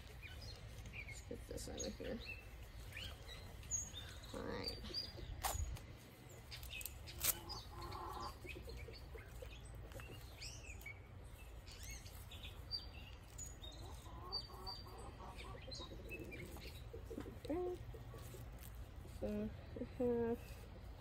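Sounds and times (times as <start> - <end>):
small birds chirping: 0.0 - 21.0
chickens clucking: 6.1 - 21.0.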